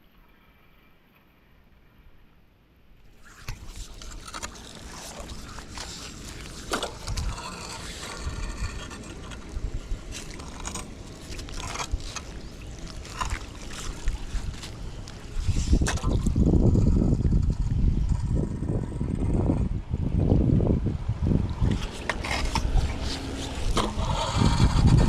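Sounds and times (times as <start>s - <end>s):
scraping in shallow water: 3.0s - 25.0s
water splashing: 3.1s - 17.2s, 21.2s - 25.0s.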